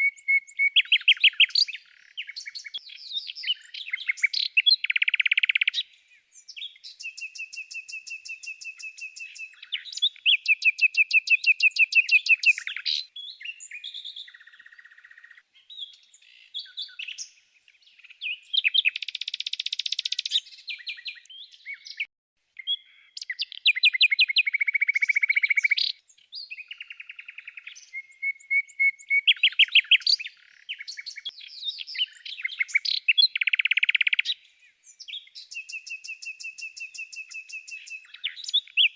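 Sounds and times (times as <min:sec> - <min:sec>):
songbirds chirping and singing: 0:00.0 - 0:38.9.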